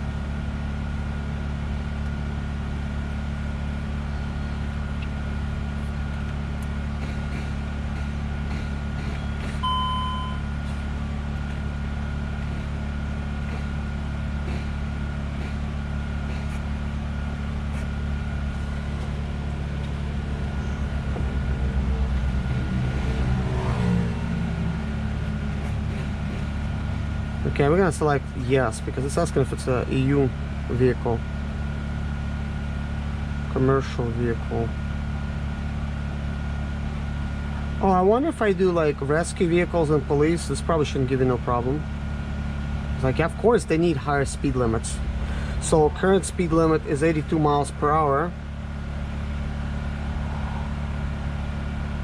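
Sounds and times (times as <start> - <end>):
low machine hum: 0.0 - 52.0
faint high whine: 9.2 - 10.8
short electronic beep: 9.6 - 10.6.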